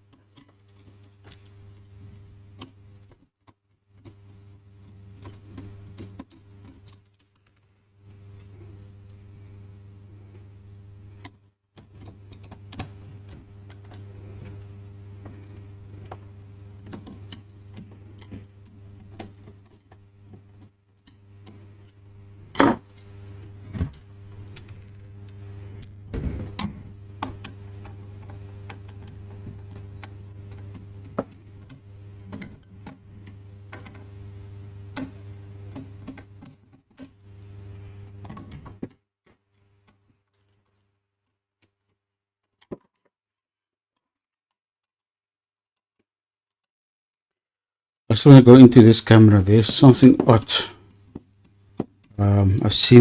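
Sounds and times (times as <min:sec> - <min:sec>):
steady low hum: 0:07.9 - 0:38.8, 0:48.1 - 0:51.1, 0:52.2 - 0:53.0.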